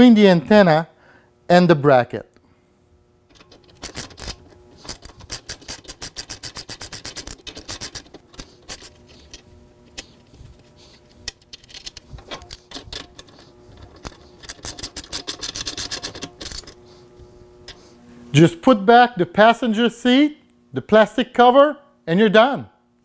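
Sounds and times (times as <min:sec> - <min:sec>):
ratchet wrench clicking: 0:03.3 - 0:09.4, 0:14.0 - 0:16.8.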